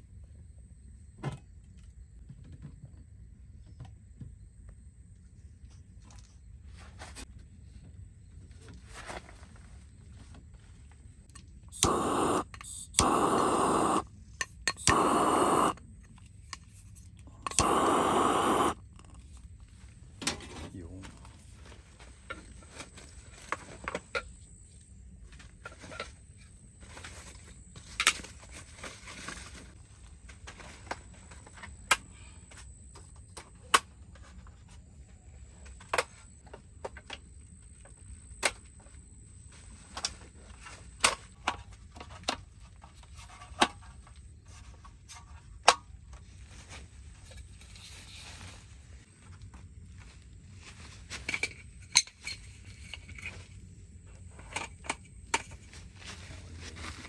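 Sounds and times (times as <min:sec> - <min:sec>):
faint high-pitched whine: 0:11.8 - 0:14.0, 0:17.4 - 0:18.8.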